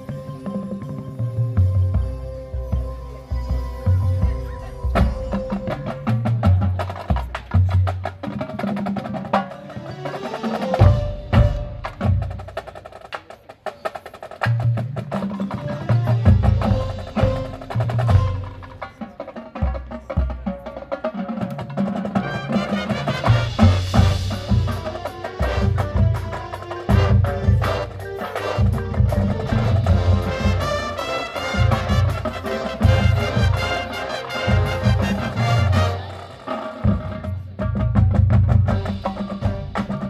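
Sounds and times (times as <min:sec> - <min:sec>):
marching band drums: 0:00.0 - 0:40.0
heavy low drum hits: 0:23.3 - 0:26.3.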